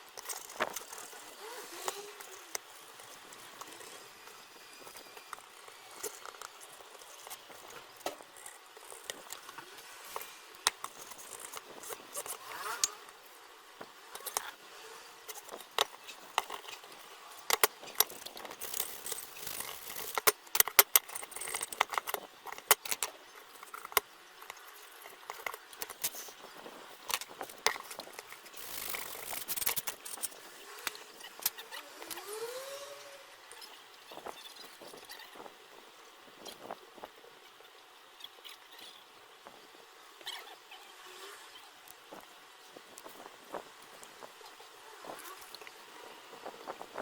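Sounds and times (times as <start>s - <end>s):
metal parts clicking and rattling: 0.1s - 13.0s, 14.1s - 14.5s, 15.3s - 32.2s.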